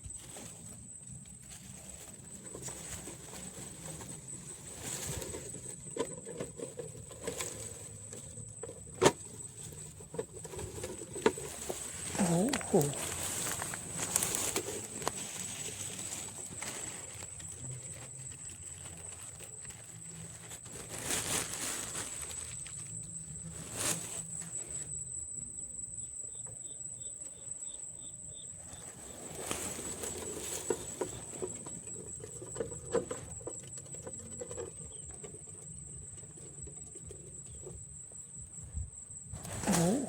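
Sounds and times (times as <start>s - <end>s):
rustling: 0.0s - 25.3s, 26.4s - 40.0s
light pattering: 0.1s - 23.2s.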